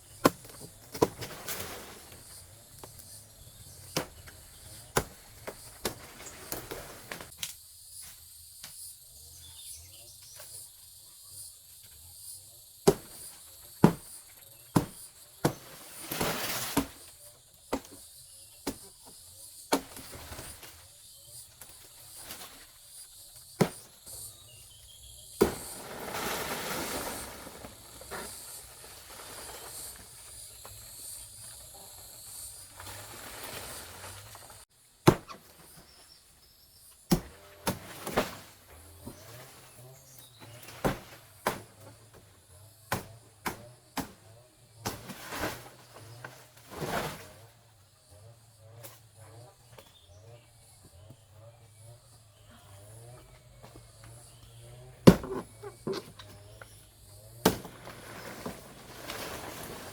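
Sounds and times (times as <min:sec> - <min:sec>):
insects chirring: 0:00.0 - 0:59.9
rustling: 0:25.4 - 0:34.6, 0:57.6 - 0:59.9.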